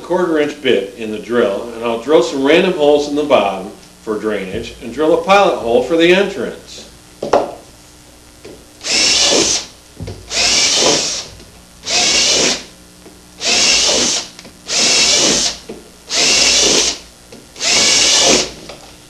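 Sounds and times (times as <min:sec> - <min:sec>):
power drill boring through gourd: 0:08.8 - 0:09.7, 0:10.3 - 0:12.7, 0:13.4 - 0:17.0, 0:17.6 - 0:18.6.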